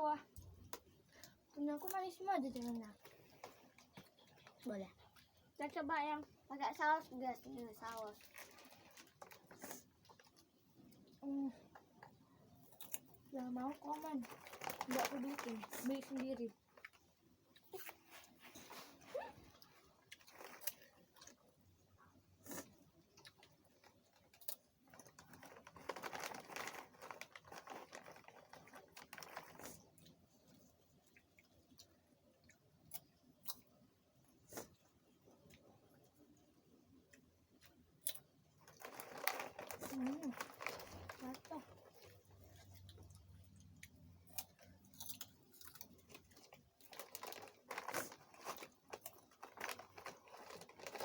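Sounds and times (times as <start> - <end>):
soft clicks and crinkly rustles: 0.1 - 21.9, 23.0 - 33.6, 35.3 - 51.0
snacks crackling while eaten: 7.4 - 18.9, 19.5 - 33.8, 37.0 - 51.0.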